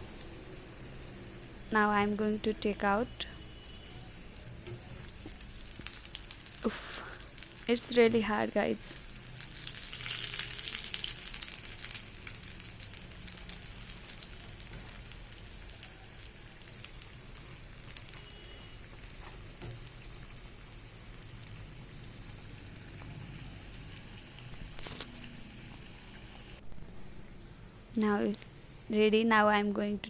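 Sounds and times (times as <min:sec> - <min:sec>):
food deep-frying in hot oil: 0:00.0 - 0:30.0.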